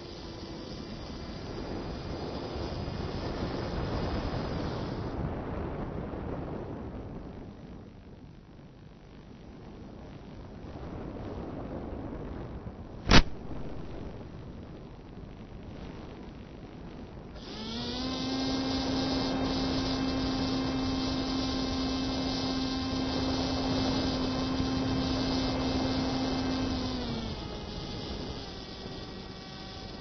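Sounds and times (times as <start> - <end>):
model airplane motor humming: 0.0 - 5.2, 17.4 - 30.0
steady hiss: 0.0 - 5.6, 8.8 - 30.0.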